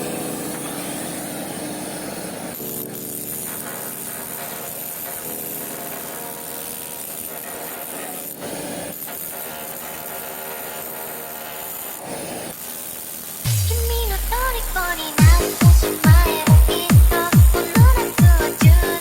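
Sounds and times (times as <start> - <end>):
power tool humming and hissing: 0.0 - 19.0
electronic music with sliding bass: 13.5 - 19.0.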